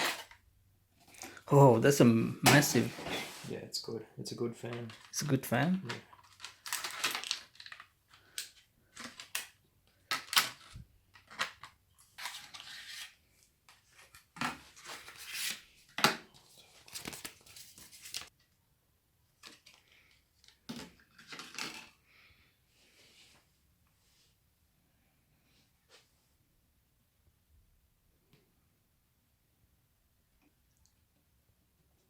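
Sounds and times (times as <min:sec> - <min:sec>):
packaging rustling and tearing: 0:06.1 - 0:13.2, 0:16.4 - 0:18.3.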